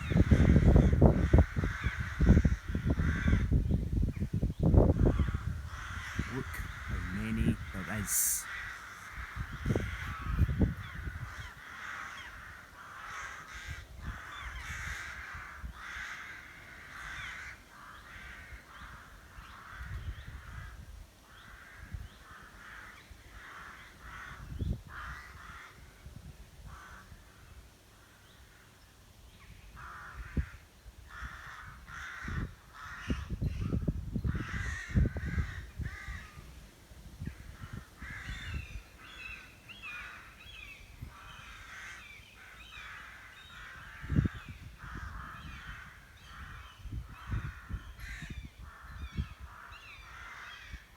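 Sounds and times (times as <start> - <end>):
rooks cawing: 0.1 - 3.6, 5.0 - 19.9, 37.6 - 49.0, 49.6 - 50.8.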